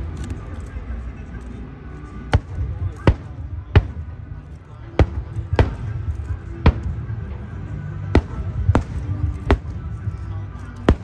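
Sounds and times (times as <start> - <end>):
low rumble: 0.0 - 11.0
fireworks bangs: 5.0 - 7.2, 8.2 - 10.0.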